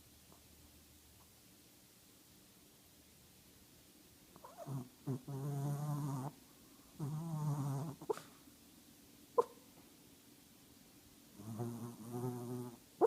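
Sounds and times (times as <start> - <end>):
dog snoring: 4.4 - 6.4, 7.0 - 8.3, 11.4 - 12.8.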